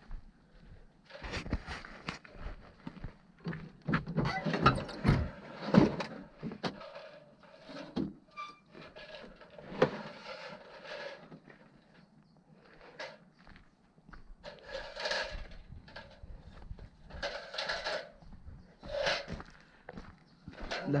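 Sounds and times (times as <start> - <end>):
objects clicking and scraping: 14.4 - 19.8.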